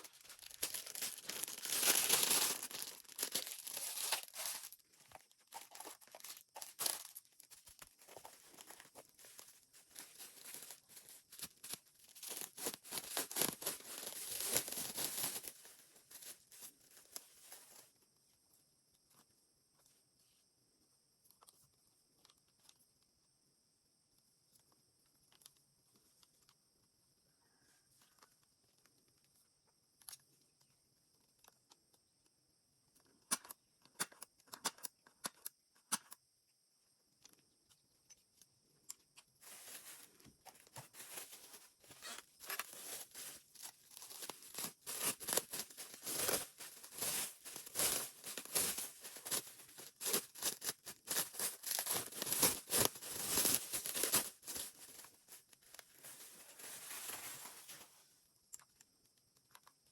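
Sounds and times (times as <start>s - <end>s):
packaging rustling and tearing: 0.0s - 17.8s, 39.5s - 57.8s.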